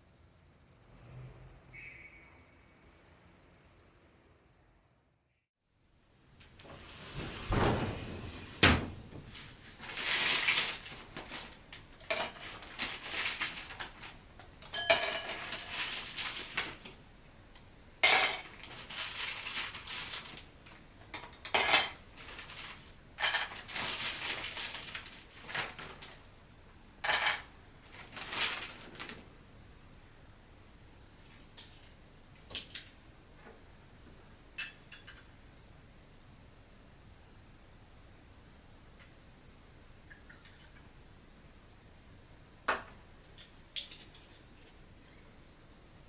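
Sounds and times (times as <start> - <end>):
dishes and utensils clinking: 14.6 - 16.1, 18.0 - 18.6, 21.1 - 22.0, 27.0 - 27.5, 34.6 - 35.3.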